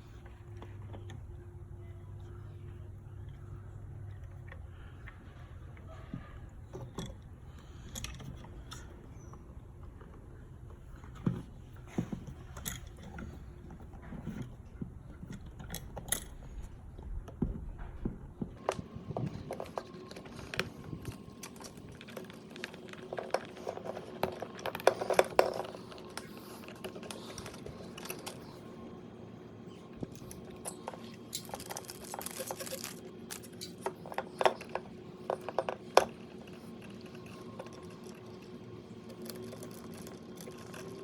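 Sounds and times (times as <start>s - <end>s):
faint steady hum: 0.0s - 41.0s.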